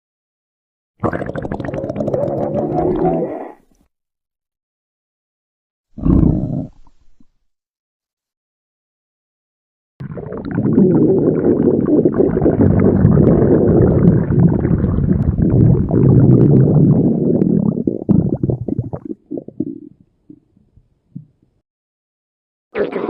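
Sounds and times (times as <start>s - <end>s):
stomach growling: 1.0s - 3.8s, 6.0s - 7.4s, 10.0s - 21.4s, 22.8s - 23.0s.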